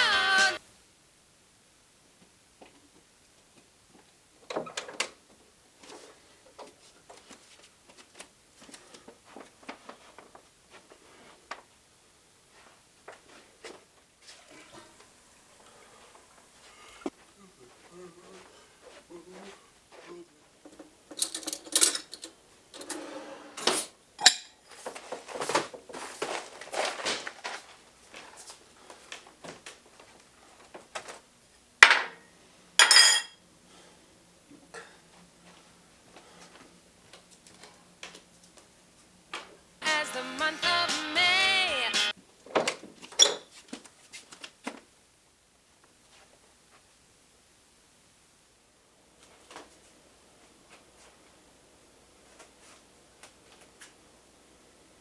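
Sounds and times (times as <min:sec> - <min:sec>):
dishes and utensils clattering: 0:21.1 - 0:23.1, 0:32.8 - 0:33.4.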